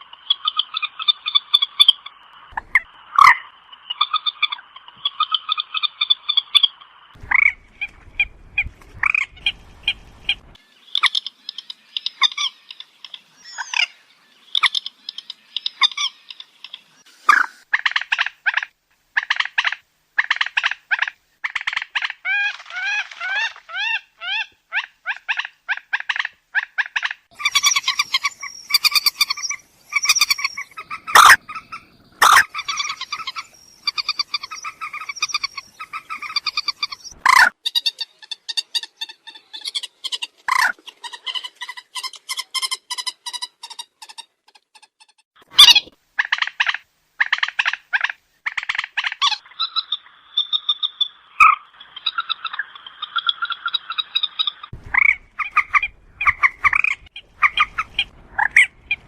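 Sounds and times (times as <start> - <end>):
moorhen calling: 0.0 - 43.8, 45.5 - 59.0
low rumble: 7.2 - 10.6.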